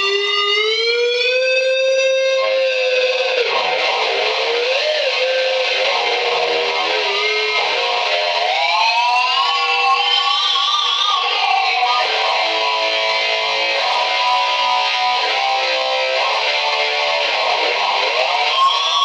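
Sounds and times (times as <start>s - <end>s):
loud electric guitar gliding notes: 0.0s - 19.0s.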